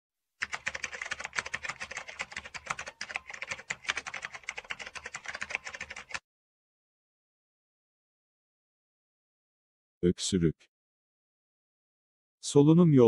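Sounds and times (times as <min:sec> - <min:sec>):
fast keyboard typing: 0:00.4 - 0:06.2.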